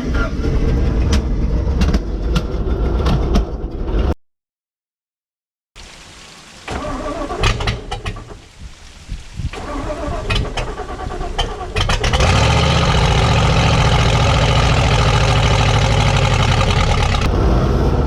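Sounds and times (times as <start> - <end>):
car engine sputtering on starter: 6.7 - 8.5, 9.5 - 17.3
engine running loud and steady: 12.0 - 18.0.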